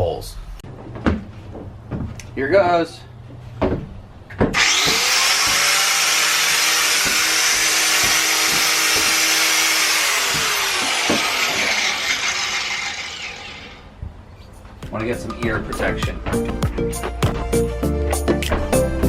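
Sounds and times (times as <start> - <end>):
angle grinder cutting metal: 4.6 - 13.9.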